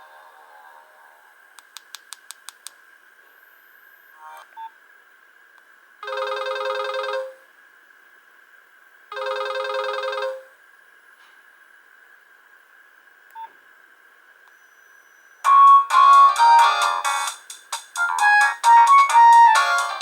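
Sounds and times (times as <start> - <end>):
trilling phone ringtone: 6.0 - 7.4.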